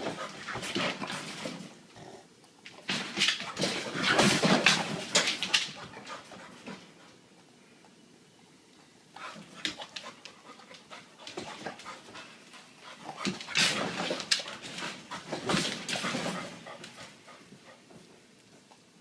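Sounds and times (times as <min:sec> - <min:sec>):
dog panting: 0:09.2 - 0:18.2.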